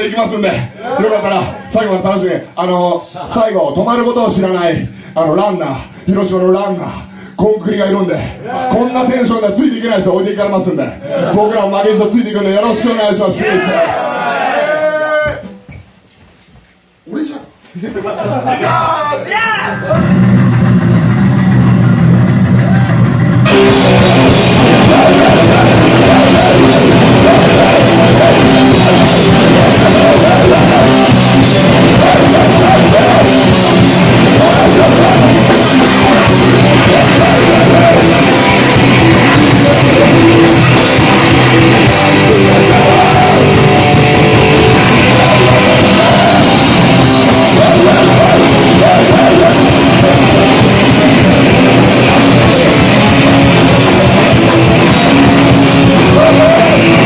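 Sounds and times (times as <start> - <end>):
rock band playing live: 19.7 - 57.0.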